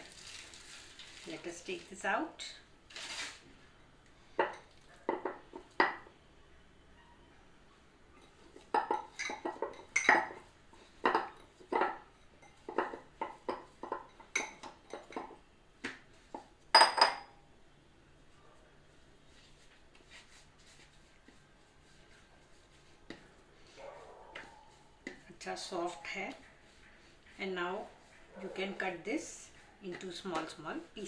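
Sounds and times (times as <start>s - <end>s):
bowl and utensils clattering: 8.2s - 15.4s, 16.8s - 17.3s.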